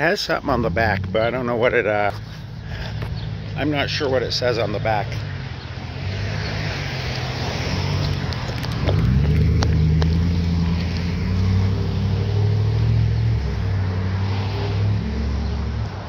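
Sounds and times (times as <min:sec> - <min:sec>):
vehicle engine revving: 0:00.0 - 0:16.0.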